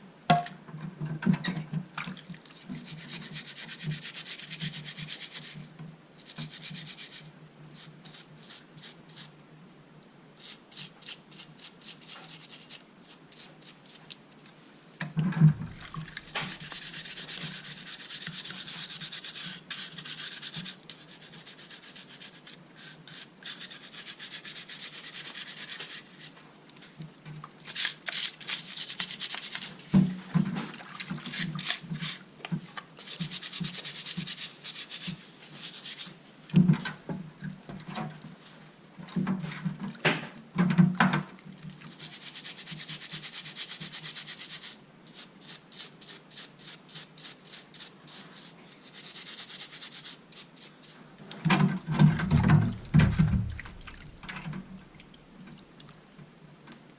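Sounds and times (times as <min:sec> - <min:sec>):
hand scraping hard surface: 0:15.5 - 0:20.6.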